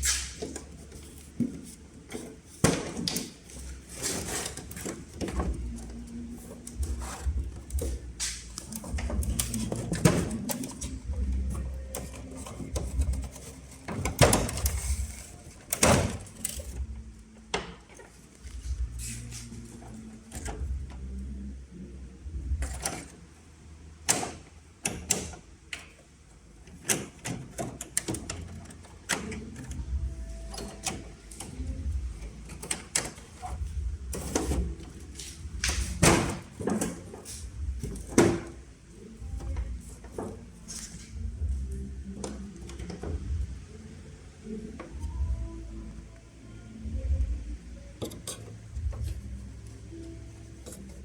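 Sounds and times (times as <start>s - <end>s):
objects being handled: 0.0s - 21.5s.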